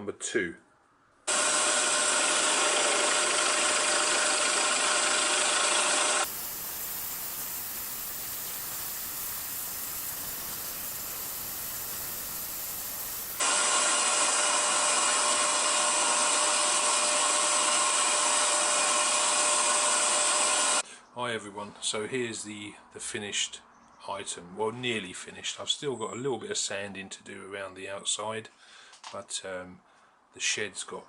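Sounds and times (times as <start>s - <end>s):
scroll saw cutting wood: 1.3s - 20.8s.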